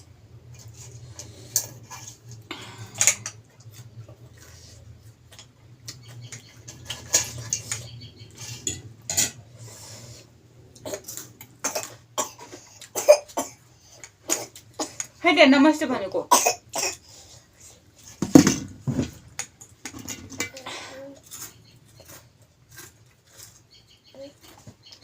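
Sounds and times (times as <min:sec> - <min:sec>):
low steady hum: 0:00.0 - 0:24.7
cutlery clinking on dishes: 0:06.2 - 0:09.4.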